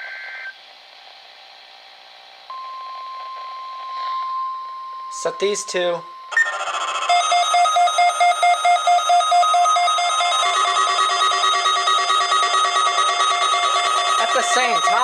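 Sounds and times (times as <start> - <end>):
lower alarm tone: 2.5 - 15.0
steady alarm tone: 2.5 - 15.0
radio alarms beeping rapidly: 5.1 - 15.0.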